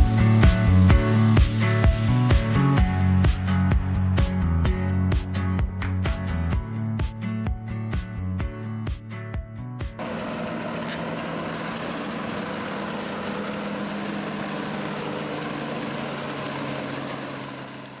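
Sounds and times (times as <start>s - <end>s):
music: 0.0s - 10.0s
diesel engine droning: 10.0s - 18.0s.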